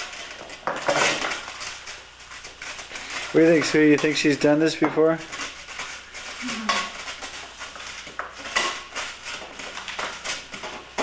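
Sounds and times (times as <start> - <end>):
utensils and dishes clinking: 3.0 - 11.0.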